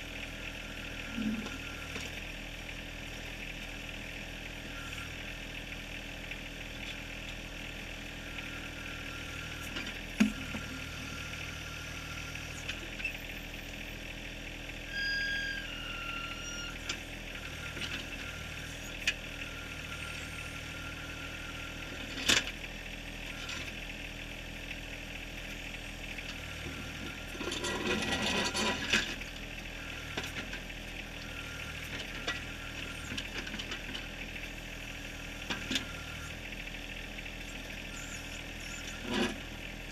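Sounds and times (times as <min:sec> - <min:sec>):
diesel tractor engine running: 0:00.0 - 0:39.9
rattling scrape of rock and gravel: 0:27.4 - 0:29.2, 0:39.0 - 0:39.4.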